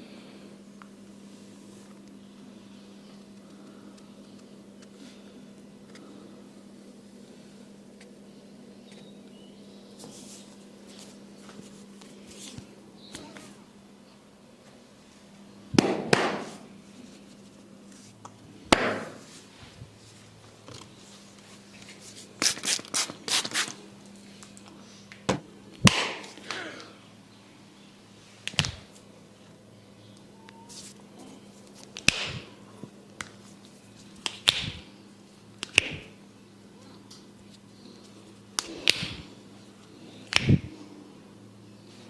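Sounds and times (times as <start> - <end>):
slaps and taps on head: 15.8 - 16.6, 18.7 - 19.2, 25.1 - 26.6, 28.4 - 28.9, 32.0 - 32.5, 34.2 - 34.8, 35.6 - 36.1, 38.6 - 39.3, 40.3 - 40.7.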